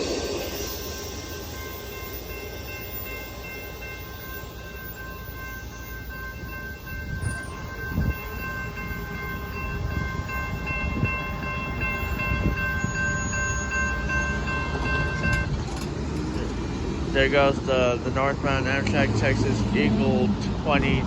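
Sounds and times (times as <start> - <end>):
passenger train rumbling past: 0.0 - 21.0
multi-chime train horn: 0.3 - 15.6
wheel clacks over rail joints: 14.1 - 17.1.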